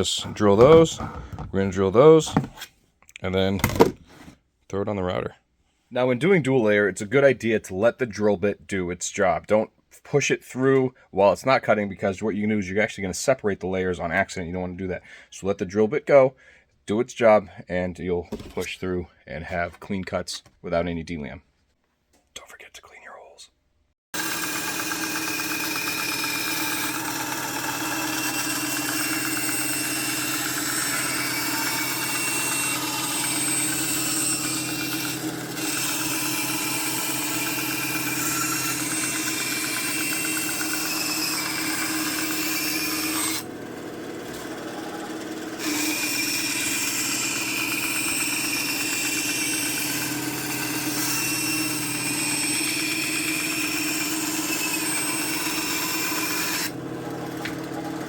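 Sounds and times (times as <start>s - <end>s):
power tool cutting plastic sheet: 0.0s - 2.6s, 24.2s - 58.0s.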